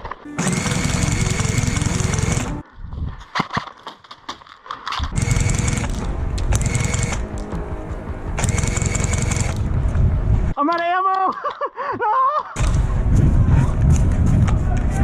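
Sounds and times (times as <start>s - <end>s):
airsoft minigun firing: 0.4s - 2.6s, 5.2s - 7.3s, 8.4s - 9.7s
sharp clicks: 4.7s - 7.5s, 8.4s - 9.7s.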